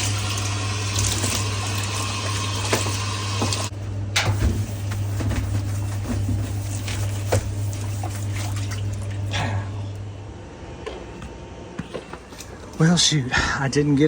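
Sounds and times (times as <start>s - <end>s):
water running and splashing: 0.0s - 3.7s, 6.4s - 9.3s
steady low hum: 3.7s - 14.0s.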